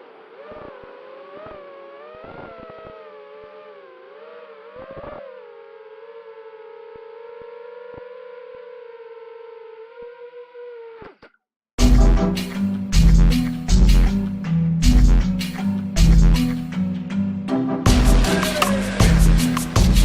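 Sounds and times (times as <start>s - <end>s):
quadcopter motors whining: 0.0s - 11.1s.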